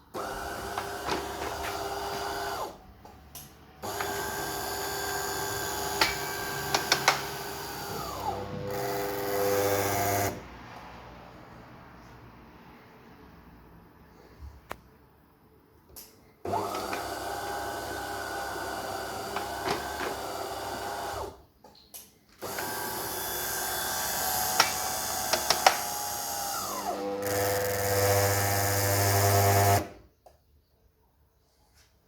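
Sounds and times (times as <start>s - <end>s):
coffee machine motor running: 3.8s - 10.3s.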